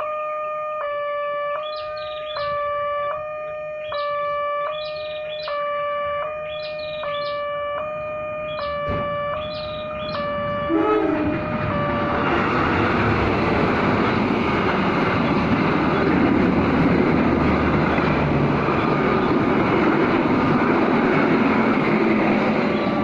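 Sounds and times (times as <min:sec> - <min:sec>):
crossing warning signal tones: 0:00.0 - 0:16.3
train wheels rumbling on rails: 0:07.8 - 0:23.0.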